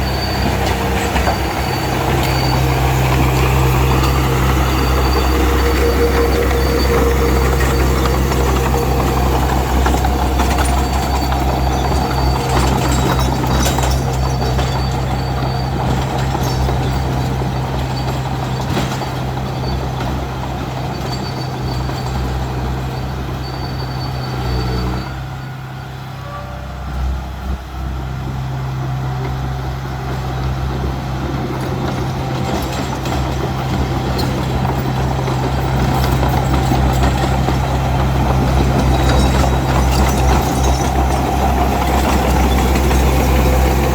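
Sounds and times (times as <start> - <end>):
heavy diesel engine running: 0.0 - 43.9.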